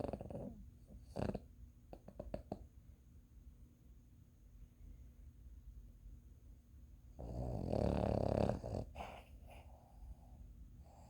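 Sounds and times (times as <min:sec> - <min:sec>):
loud snore: 0:07.2 - 0:09.0
soft breathing: 0:08.8 - 0:11.0.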